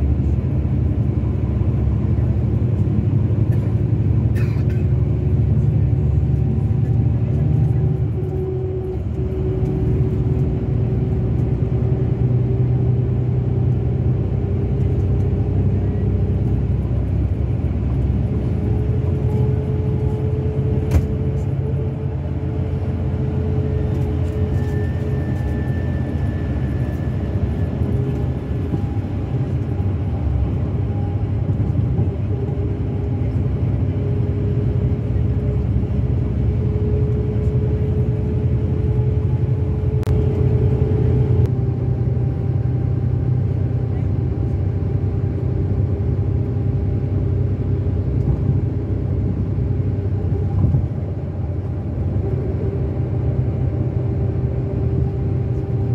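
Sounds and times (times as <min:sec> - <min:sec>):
diesel engine cruising: 0:00.0 - 0:55.9.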